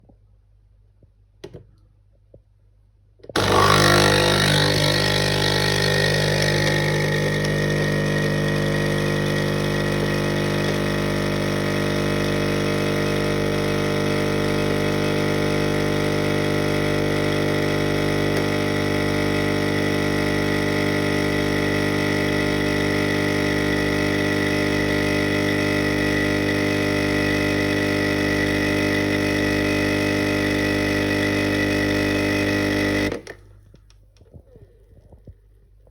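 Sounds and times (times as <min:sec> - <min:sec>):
coffee machine clicks: 0:03.3 - 0:11.9
coffee machine pump buzzing hum: 0:03.3 - 0:33.4.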